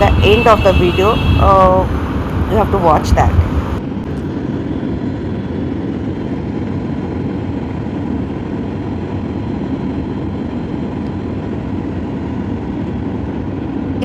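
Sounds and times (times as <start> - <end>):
airliner cabin engine and airflow: 0.0 - 14.0.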